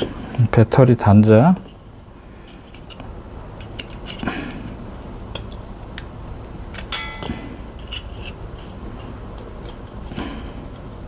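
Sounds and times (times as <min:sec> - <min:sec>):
brief metallic ring: 0:06.9 - 0:07.6.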